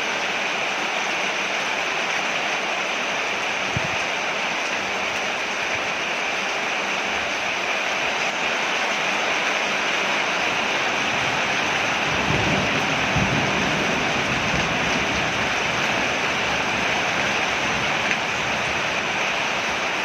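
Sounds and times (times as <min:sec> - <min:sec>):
rain falling on a porch: 0:00.0 - 0:20.0.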